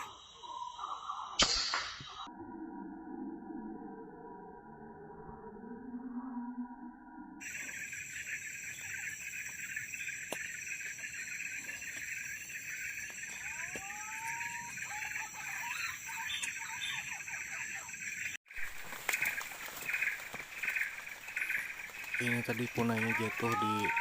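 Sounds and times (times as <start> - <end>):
high insect drone: 7.4 - 24.0.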